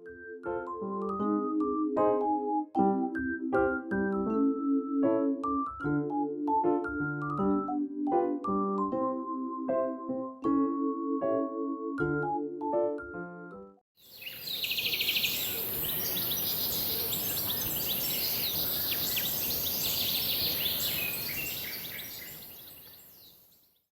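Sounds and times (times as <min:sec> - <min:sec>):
birds chirping: 0:14.0 - 0:23.7
steady high hiss: 0:14.1 - 0:22.6.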